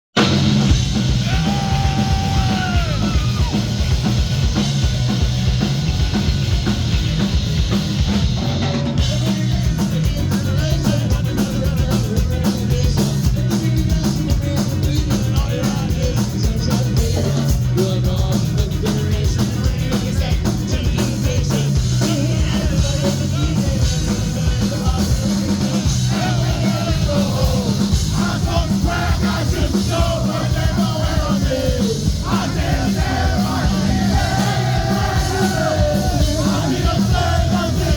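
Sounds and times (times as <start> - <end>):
drum kit: 0.1 - 37.9
punk rock band playing live: 0.1 - 37.9
person singing: 9.0 - 37.9.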